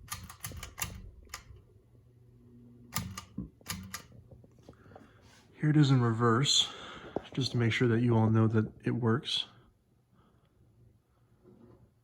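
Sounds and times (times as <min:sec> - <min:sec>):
fan switch clicks: 0:00.0 - 0:01.6, 0:02.9 - 0:04.1.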